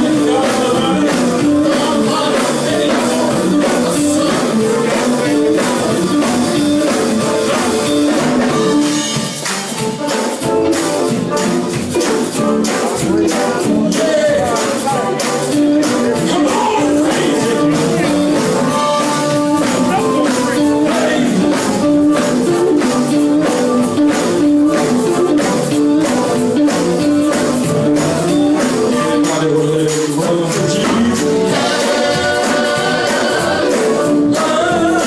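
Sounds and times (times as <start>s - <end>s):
gospel band playing: 0.0s - 35.0s
singing: 12.7s - 21.8s, 28.6s - 35.0s.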